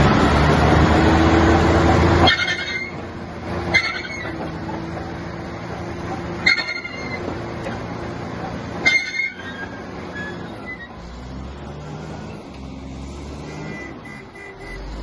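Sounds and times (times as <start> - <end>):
bulldozer diesel engine running: 0.0 - 15.0
high metallic squeals: 2.2 - 3.0, 3.7 - 4.4, 6.4 - 7.3, 8.8 - 11.0.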